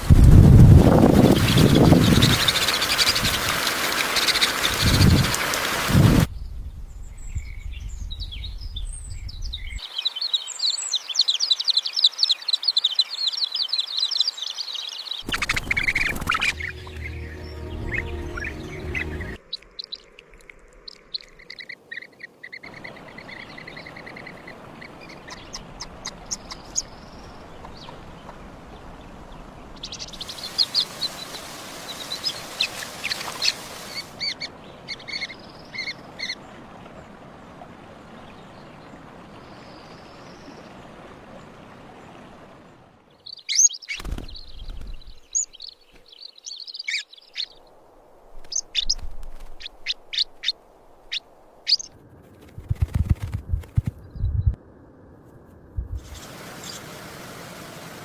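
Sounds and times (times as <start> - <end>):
small birds chirping: 1.1 - 37.1, 43.1 - 47.8, 48.4 - 54.6, 55.8 - 57.0
faint steady hiss: 9.7 - 43.4, 54.6 - 58.0.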